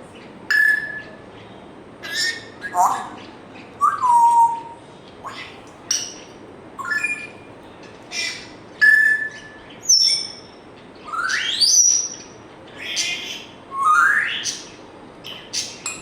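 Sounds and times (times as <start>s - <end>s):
parrot whistling and chirping: 0.5s - 1.1s, 6.8s - 7.4s, 8.2s - 12.3s, 12.9s - 14.7s.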